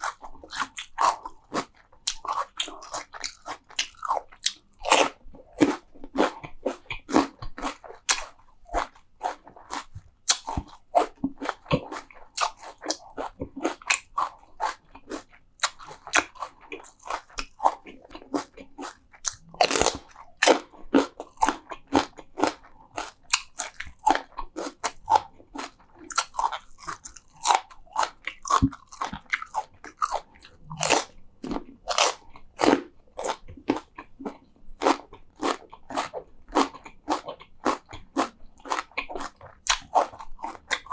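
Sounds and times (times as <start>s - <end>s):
person crunching crisp food: 0.0s - 40.9s
wet chewing: 0.0s - 40.9s.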